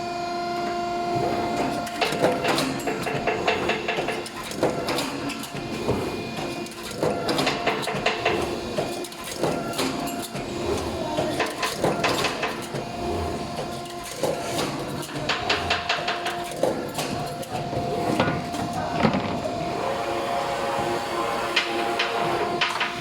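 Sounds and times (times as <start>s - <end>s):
machine humming: 0.0s - 23.0s
sharp machine clicks and knocks: 1.8s - 12.9s, 13.6s - 18.6s, 21.5s - 23.0s.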